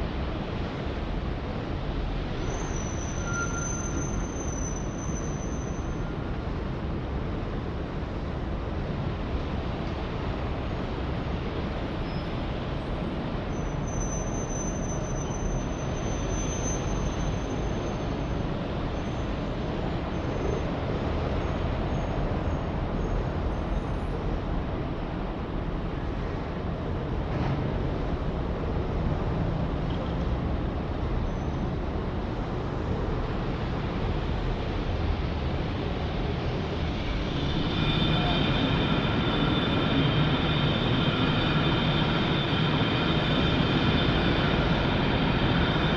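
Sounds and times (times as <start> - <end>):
rumble of city traffic: 0.0 - 45.9
faint high squeal: 2.3 - 6.4, 11.9 - 24.2, 31.2 - 31.8, 36.1 - 45.9.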